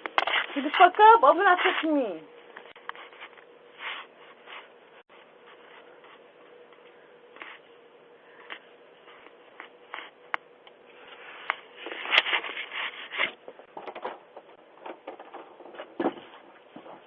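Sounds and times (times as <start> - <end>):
rubbing and scraping: 11.0 - 13.4.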